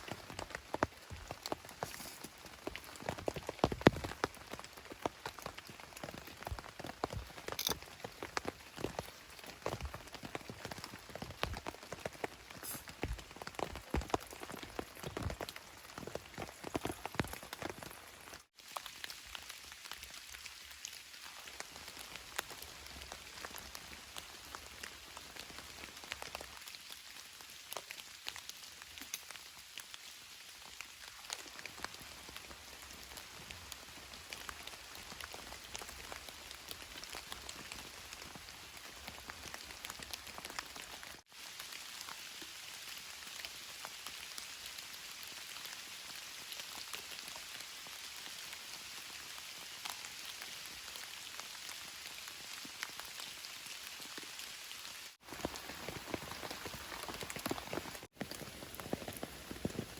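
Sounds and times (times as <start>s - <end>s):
raindrops ticking: 0.0s - 30.0s, 55.2s - 59.9s
rain on a tarp: 0.0s - 59.9s.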